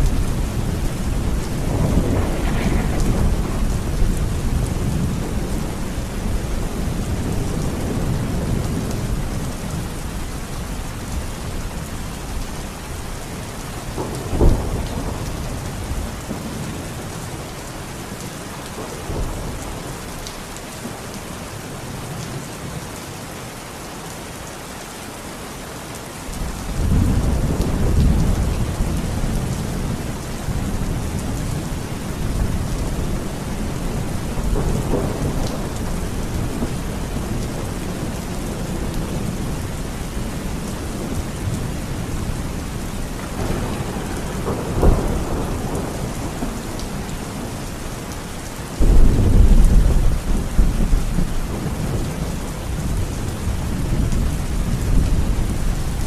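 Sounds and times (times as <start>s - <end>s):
rolling thunder: 0.0s - 10.0s, 26.4s - 47.9s, 48.8s - 56.0s
heavy rain: 0.0s - 56.0s
loud thunder clap: 1.1s - 5.8s, 48.8s - 52.0s.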